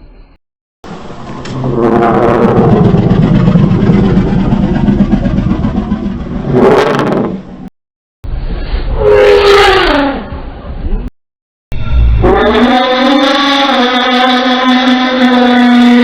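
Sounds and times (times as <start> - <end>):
dinosaur roar: 1.4 - 5.8, 6.4 - 7.5, 8.9 - 10.4, 11.8 - 16.0.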